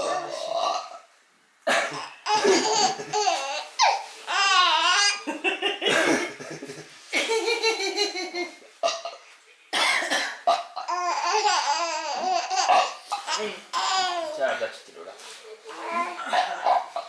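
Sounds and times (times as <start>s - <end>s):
man belching: 0.0s - 1.0s
baby laughing: 2.0s - 6.5s, 10.8s - 14.5s.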